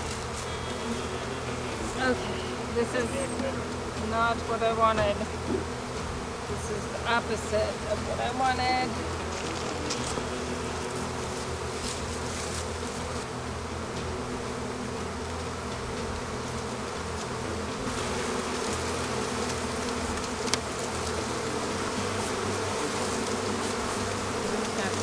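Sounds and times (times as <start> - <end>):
honeybees buzzing: 0.0 - 25.0.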